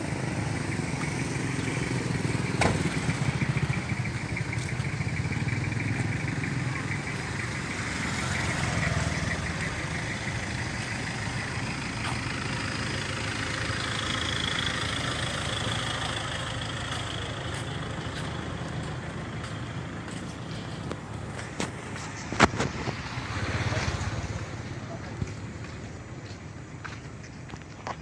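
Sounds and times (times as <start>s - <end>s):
truck diesel engine idling: 0.0s - 22.4s.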